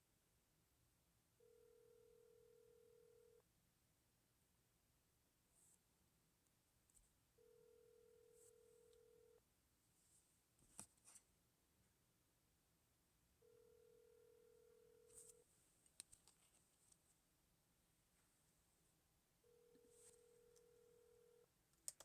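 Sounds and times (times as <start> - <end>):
telephone ringing tone: 1.4 - 3.4, 7.4 - 9.4, 13.4 - 15.4, 19.4 - 21.5.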